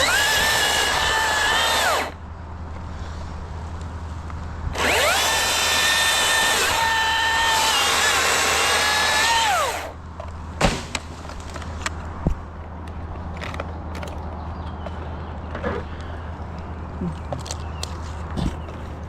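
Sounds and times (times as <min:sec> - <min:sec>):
chainsaw cutting: 0:00.0 - 0:02.2, 0:04.8 - 0:10.0.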